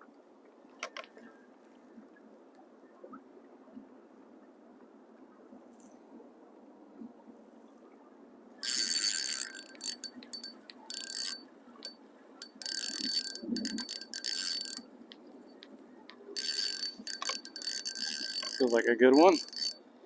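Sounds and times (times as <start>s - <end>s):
fishing reel gears whirring: 8.6s - 15.6s, 16.4s - 19.8s.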